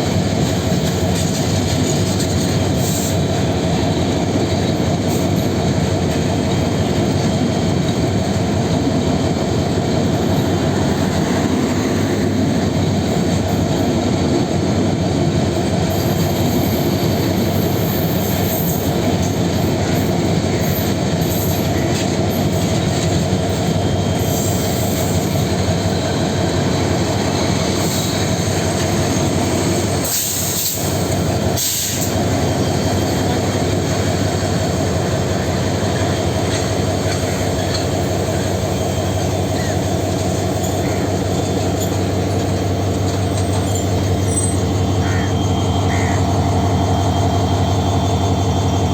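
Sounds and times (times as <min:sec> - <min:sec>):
train rumbling on rails: 0:00.0 - 0:48.9
wheels squealing: 0:15.9 - 0:48.2.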